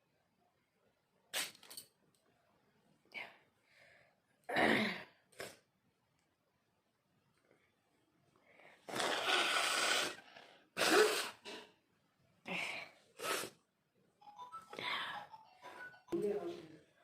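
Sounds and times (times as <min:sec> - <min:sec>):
person blowing nose: 0:08.8 - 0:11.7, 0:13.2 - 0:13.6.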